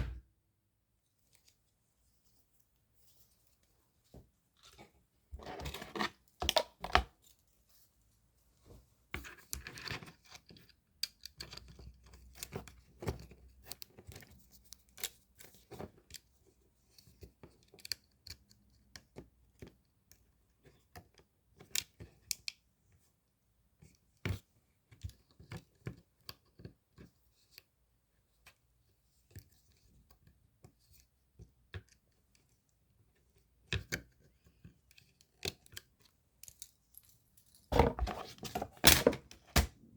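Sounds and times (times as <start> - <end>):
small clicks taps and scrapes: 9.1 - 23.1, 28.4 - 39.6.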